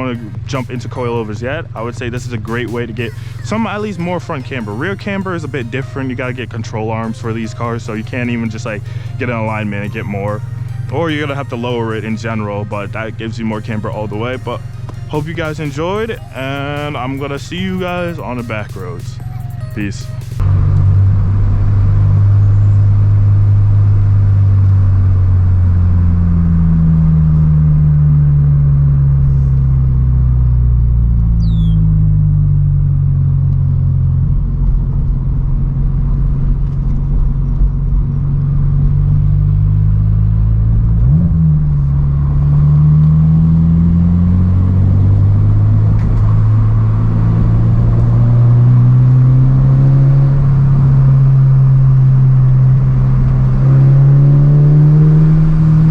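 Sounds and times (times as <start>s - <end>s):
car engine accelerating: 0.0s - 55.9s
sharp engine rev: 38.4s - 55.9s.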